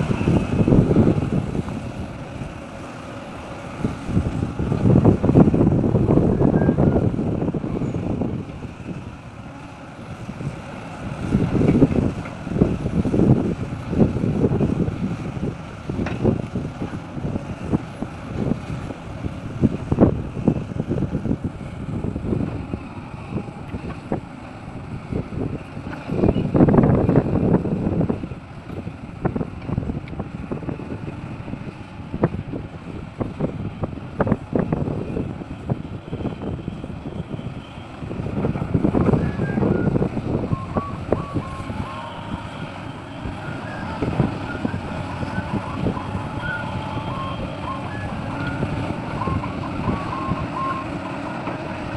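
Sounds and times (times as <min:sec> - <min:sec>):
excavator diesel engine working: 0:00.0 - 0:51.9
wind on microphone: 0:00.0 - 0:51.9.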